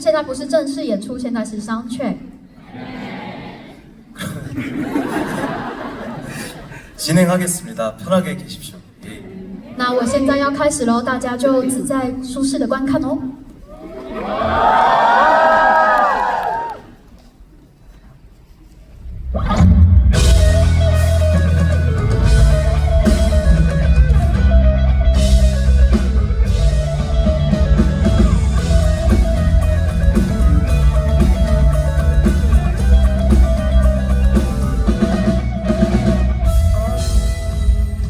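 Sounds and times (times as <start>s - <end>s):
drum kit: 19.1s - 38.0s
guitar: 19.2s - 38.0s
live band playing: 19.3s - 38.0s.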